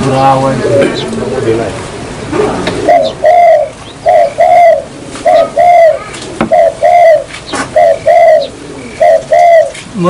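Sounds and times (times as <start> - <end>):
dove cooing: 2.2 - 10.0.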